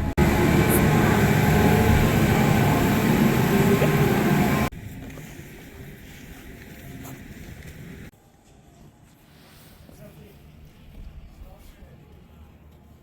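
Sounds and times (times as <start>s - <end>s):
vehicle mechanical rumble: 0.0s - 8.1s.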